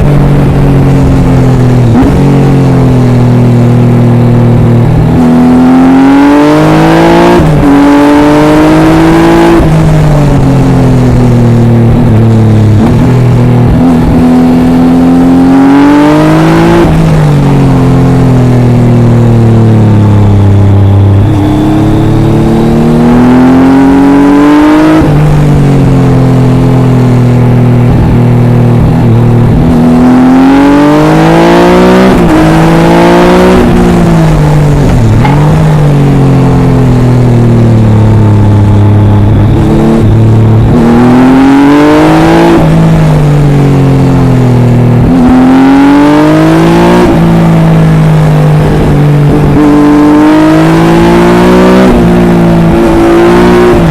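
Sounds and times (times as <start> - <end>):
motorcycle engine revving: 0.0 - 53.9.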